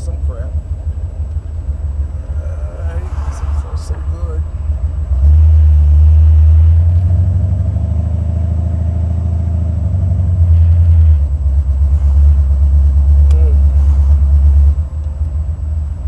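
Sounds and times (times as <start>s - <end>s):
car engine drone inside cabin: 0.0s - 16.0s.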